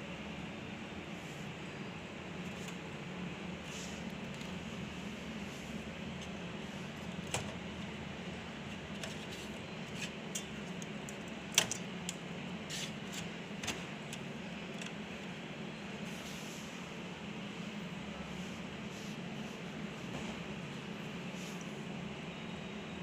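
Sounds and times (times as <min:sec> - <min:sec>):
steady machine hum: 0:00.0 - 0:23.0.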